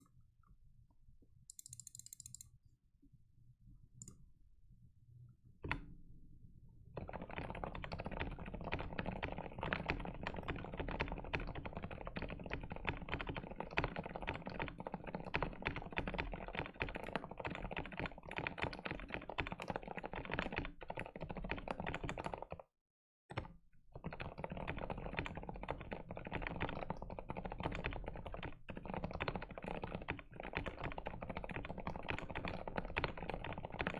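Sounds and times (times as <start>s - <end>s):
mechanical keyboard typing: 1.5s - 2.4s, 7.0s - 22.6s, 24.0s - 33.9s.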